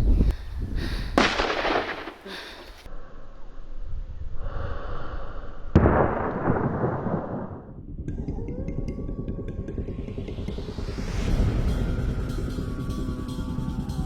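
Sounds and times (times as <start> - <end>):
rifle shot with long echo: 1.2 - 2.8, 5.7 - 7.8.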